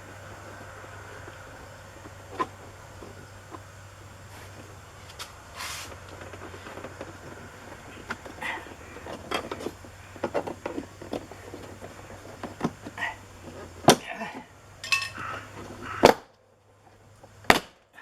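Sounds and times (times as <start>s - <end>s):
low steady hum: 0.0s - 18.0s
tools clicking and tapping: 14.8s - 15.4s.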